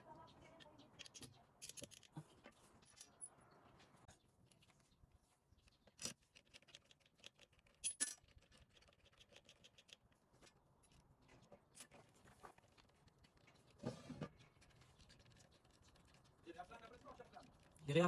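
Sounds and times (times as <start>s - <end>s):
small metal parts clinking: 0.9s - 3.4s, 5.8s - 10.0s.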